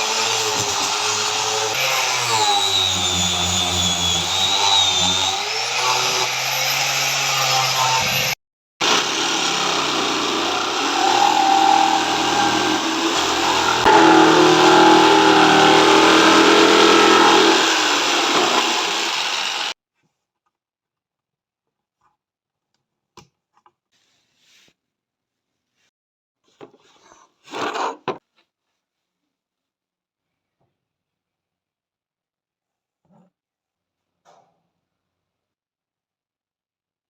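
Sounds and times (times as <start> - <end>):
power tool cutting wood: 0.0 - 19.8.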